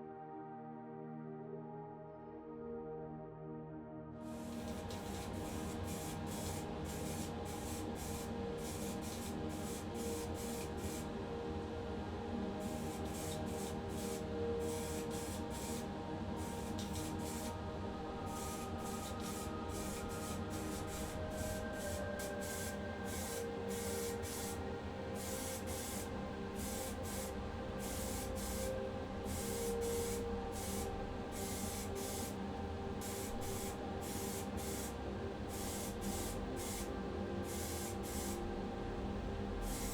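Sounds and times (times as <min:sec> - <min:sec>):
spray paint hissing bursts: 0:18.4 - 0:24.6, 0:25.2 - 0:28.7, 0:29.3 - 0:32.4, 0:33.0 - 0:38.4, 0:39.6 - 0:39.9.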